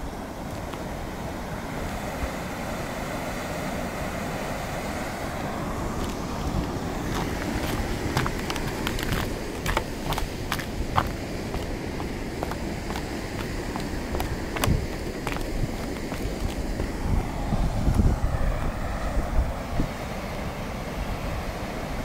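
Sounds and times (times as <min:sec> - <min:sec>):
waterfall rushing: 0:01.0 - 0:17.3.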